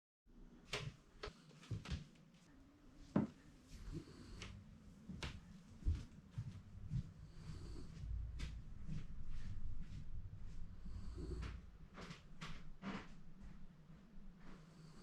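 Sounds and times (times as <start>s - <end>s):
dog snoring: 3.8s - 4.4s, 7.2s - 8.0s, 10.7s - 11.6s.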